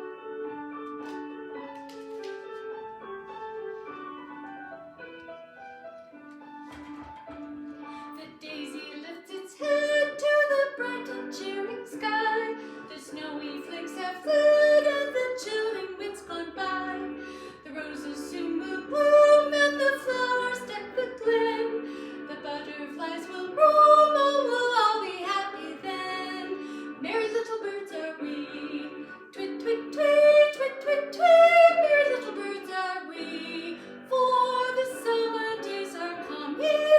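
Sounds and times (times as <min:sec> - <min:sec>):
instrumental accompaniment: 0:00.0 - 0:36.9
woman singing: 0:08.1 - 0:36.9.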